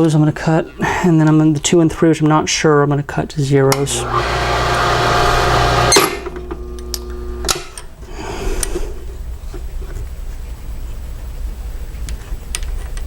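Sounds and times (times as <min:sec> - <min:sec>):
small electric motor spinning down: 0:03.8 - 0:07.5.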